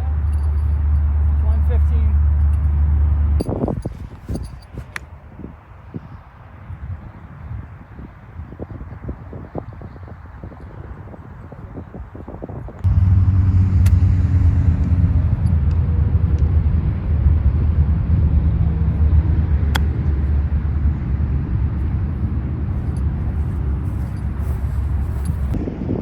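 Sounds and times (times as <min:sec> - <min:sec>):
golf cart motor humming: 0:12.9 - 0:25.6.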